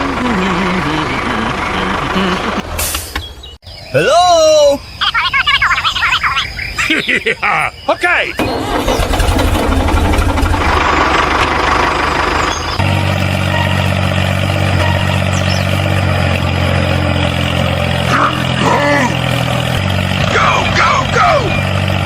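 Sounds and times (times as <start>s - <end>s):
tractor engine chugging: 8.4s - 22.0s
short squeaky glides: 12.4s - 16.1s.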